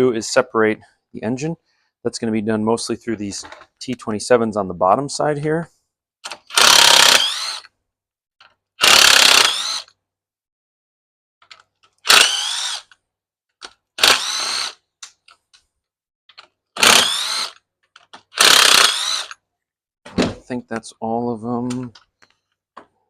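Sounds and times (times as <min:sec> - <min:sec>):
cordless drill whining: 0:06.5 - 0:07.7, 0:08.8 - 0:09.9, 0:12.0 - 0:13.0, 0:14.0 - 0:14.8, 0:16.8 - 0:17.6, 0:18.3 - 0:19.4.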